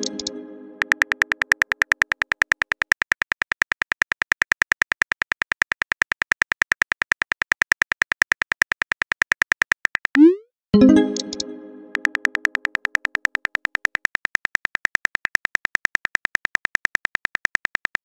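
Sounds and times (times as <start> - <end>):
phone keyboard typing clicks: 0.0 - 10.2, 11.1 - 18.0
pitched tone: 10.2 - 12.2.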